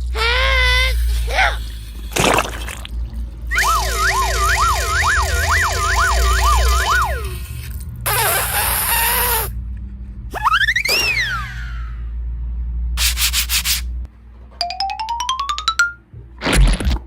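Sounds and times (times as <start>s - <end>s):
warbling siren-like tone: 0.6s - 7.7s
rising whistle: 3.4s - 7.5s.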